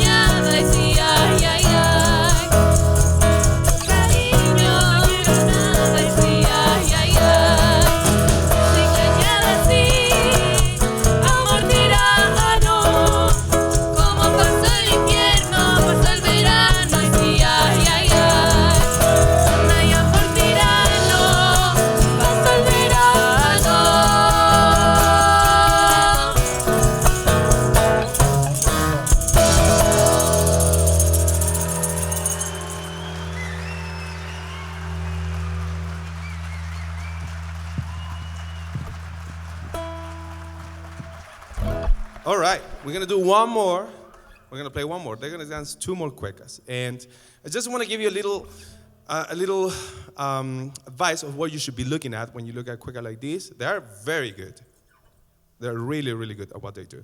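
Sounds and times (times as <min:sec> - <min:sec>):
person singing: 0:00.0 - 0:28.7
rattling percussion: 0:00.0 - 0:40.1
instrumental folk music: 0:00.0 - 0:42.3.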